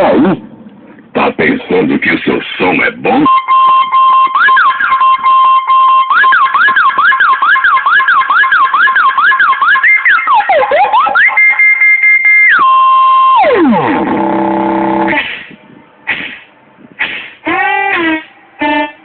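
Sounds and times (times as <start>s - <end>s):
car alarm siren: 3.1s - 15.3s.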